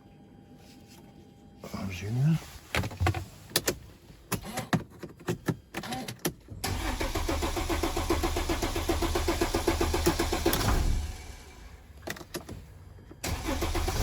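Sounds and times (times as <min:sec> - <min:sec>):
starter motor cranking engine: 0:06.6 - 0:11.7, 0:13.2 - 0:14.0.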